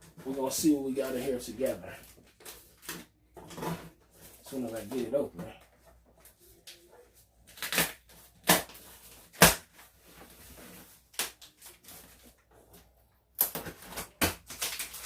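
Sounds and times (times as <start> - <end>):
cardboard cracking and ripping: 13.4 - 15.0.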